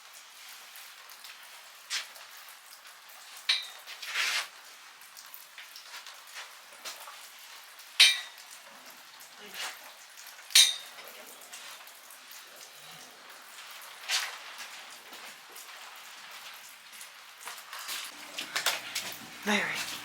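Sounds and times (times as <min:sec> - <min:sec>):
steady rain hiss: 0:00.0 - 0:20.0.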